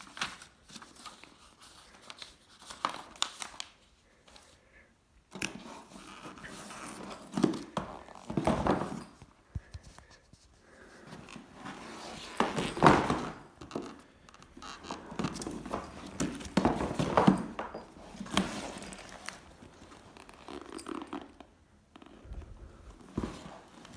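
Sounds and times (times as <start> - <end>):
bag rustling: 5.6 - 9.5, 10.1 - 21.4, 22.1 - 23.9.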